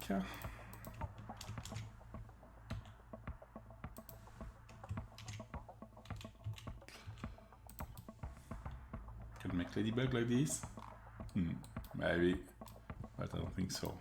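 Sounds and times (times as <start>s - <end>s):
computer keyboard and mouse clicking: 0.0s - 1.9s, 3.9s - 8.4s
steady low hum: 0.0s - 14.0s.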